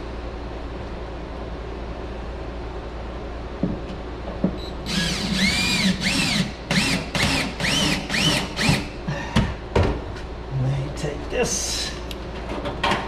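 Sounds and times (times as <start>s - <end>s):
power drill driving a screw: 4.9s - 8.9s.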